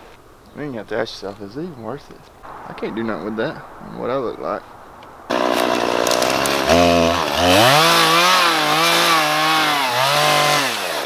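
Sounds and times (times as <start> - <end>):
chainsaw cutting brush: 5.3 - 11.0.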